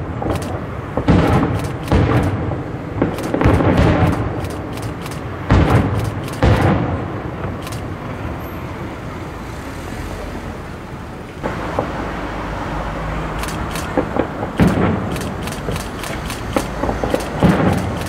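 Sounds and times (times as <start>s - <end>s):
firework bangs: 0.0s - 8.4s, 13.6s - 18.0s
fireworks crackling: 0.0s - 8.4s, 11.4s - 12.5s, 13.5s - 18.0s.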